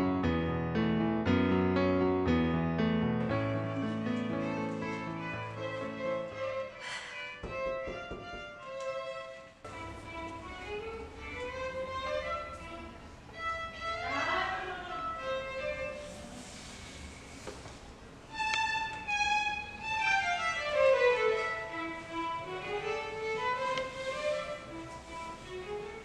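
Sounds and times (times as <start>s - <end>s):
violin playing slow melody: 3.6s - 16.3s, 18.3s - 26.0s.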